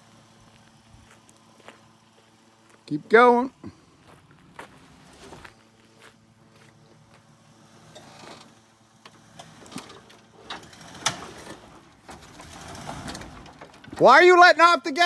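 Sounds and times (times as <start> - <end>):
faint engine running: 0.0 - 15.0
creaks and knocks from truck body: 7.9 - 14.0.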